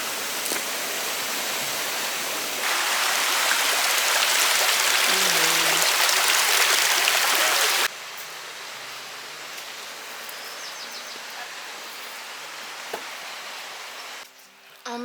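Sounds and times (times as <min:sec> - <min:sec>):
rushing creek water: 0:00.0 - 0:10.2, 0:11.2 - 0:14.2.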